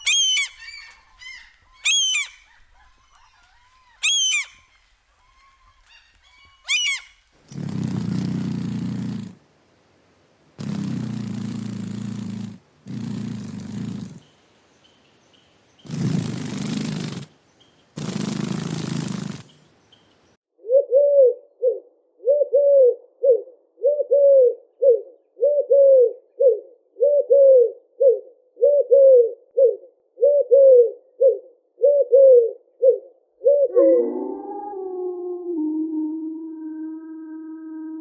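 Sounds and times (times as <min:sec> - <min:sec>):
bird cooing: 0:20.6 - 0:38.0.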